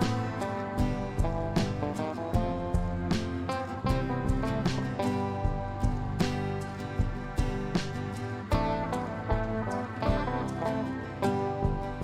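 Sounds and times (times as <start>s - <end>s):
guitar music with steady beat: 0.0s - 12.0s.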